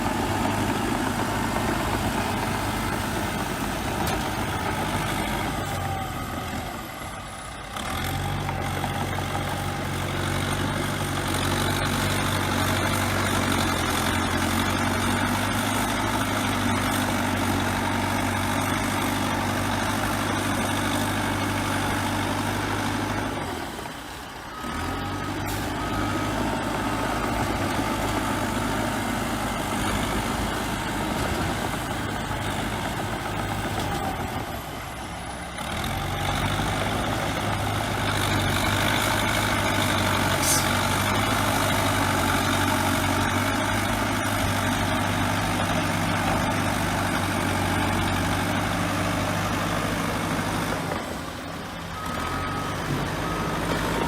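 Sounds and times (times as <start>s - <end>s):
bulldozer diesel engine running: 0.0s - 54.0s
reversing alarm beeps: 51.9s - 54.0s.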